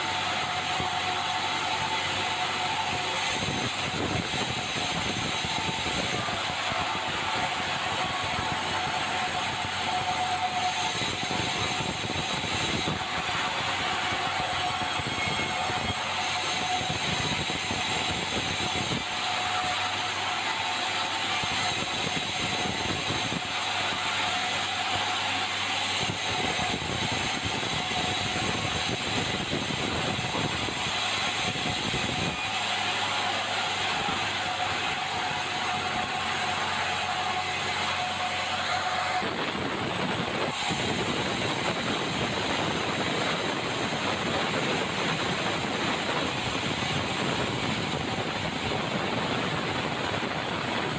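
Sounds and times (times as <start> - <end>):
high steady whine: 0.0 - 50.9
sawmill saw and engine running: 0.0 - 50.9.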